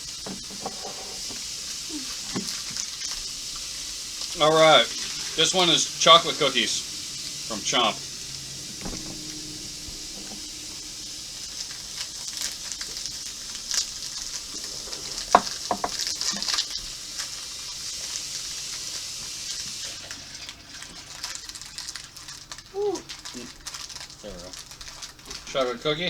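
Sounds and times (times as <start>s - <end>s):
plastic package crackling: 0.0s - 26.0s
steady hiss: 0.0s - 26.0s.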